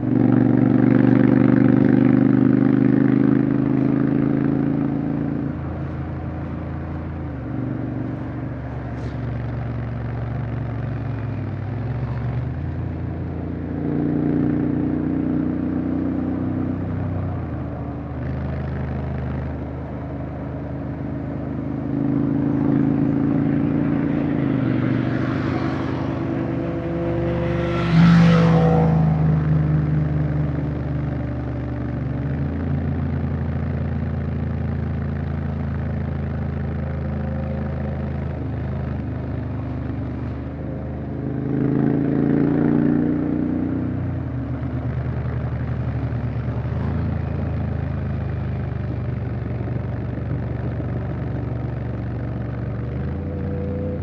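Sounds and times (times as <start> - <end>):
motorcycle engine revving: 0.0 - 54.0
rush of noise: 19.4 - 29.2.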